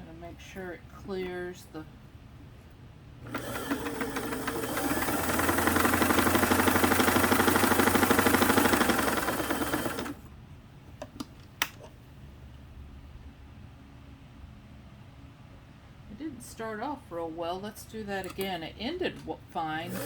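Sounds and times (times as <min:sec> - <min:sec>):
sewing machine stitching: 0:03.2 - 0:10.3.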